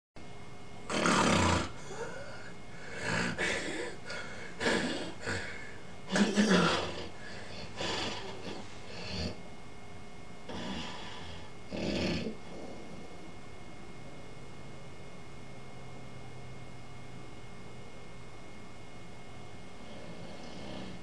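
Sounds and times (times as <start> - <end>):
person snoring: 0.9 - 9.4, 10.5 - 13.0, 19.8 - 21.0.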